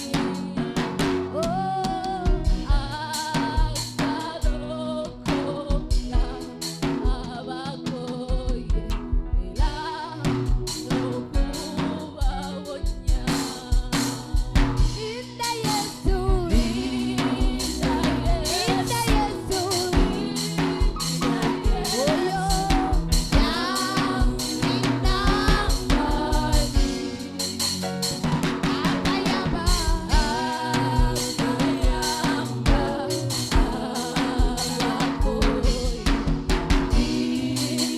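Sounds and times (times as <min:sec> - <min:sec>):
gospel worship band playing: 0:00.0 - 0:37.9
snare and bass drum beat: 0:00.0 - 0:37.9
person singing melody: 0:09.6 - 0:37.9.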